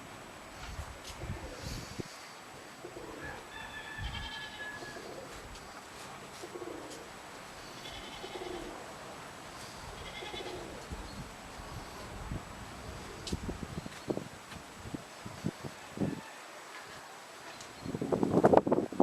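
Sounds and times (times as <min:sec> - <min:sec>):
wind noise: 0:00.0 - 0:02.3, 0:03.2 - 0:04.4, 0:09.6 - 0:16.3, 0:17.7 - 0:19.0
pigeons cooing: 0:01.0 - 0:13.7
high-pitched animal calls: 0:07.6 - 0:08.8.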